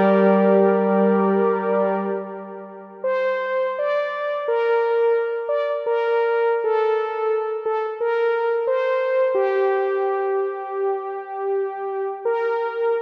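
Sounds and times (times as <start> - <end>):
synthesizer sustained notes: 0.0 - 3.2.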